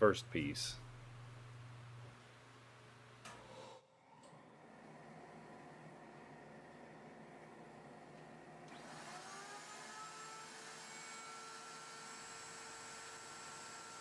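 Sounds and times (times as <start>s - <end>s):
router motor whine: 8.7s - 14.0s.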